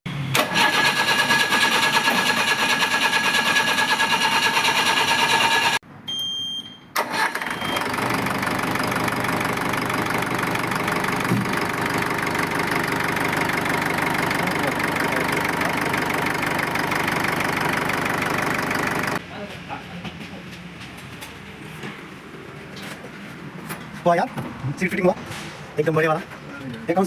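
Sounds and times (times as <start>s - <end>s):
diesel engine running: 0.1s - 5.8s, 7.1s - 19.2s.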